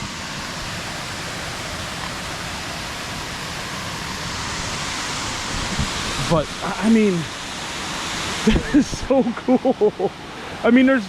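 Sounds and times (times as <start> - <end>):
waterfall roaring: 0.0 - 11.0.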